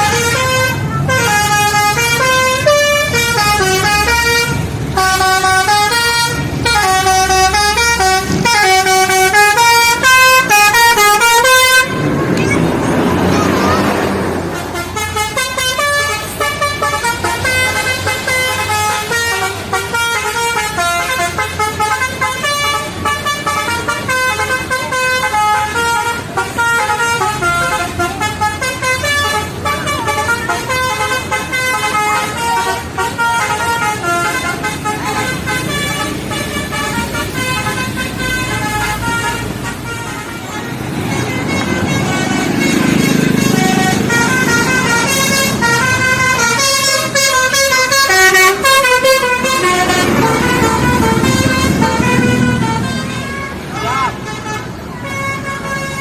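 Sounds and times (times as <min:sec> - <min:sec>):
musical vehicle horn tune: 0:00.0 - 0:56.0.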